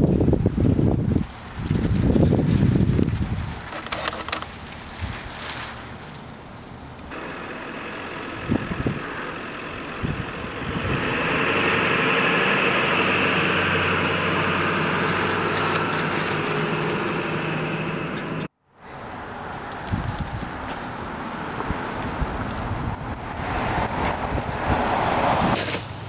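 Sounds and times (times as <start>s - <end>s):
heavy engine running: 5.8s - 26.0s.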